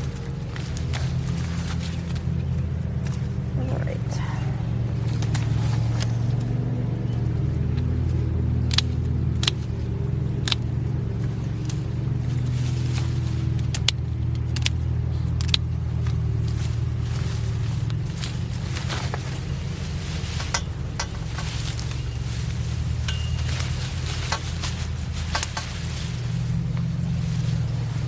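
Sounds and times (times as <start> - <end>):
engine droning: 0.0 - 28.0
canes snapping: 7.2 - 28.0.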